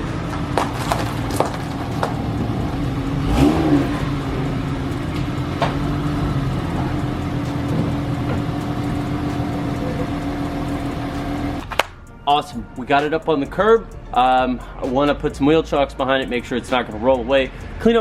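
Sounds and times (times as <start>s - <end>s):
car engine running and revving: 0.0s - 11.9s.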